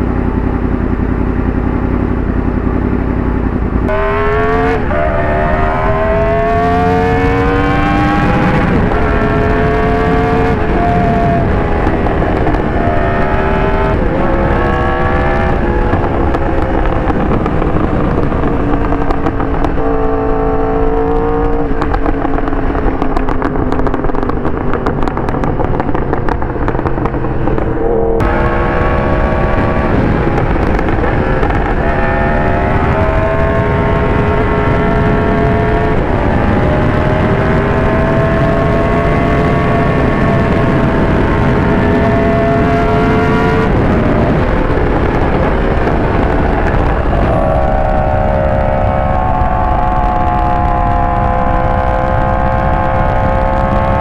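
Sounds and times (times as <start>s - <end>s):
motorcycle engine shifting gears: 0.0s - 54.0s
crackling exhaust pops: 20.8s - 36.7s.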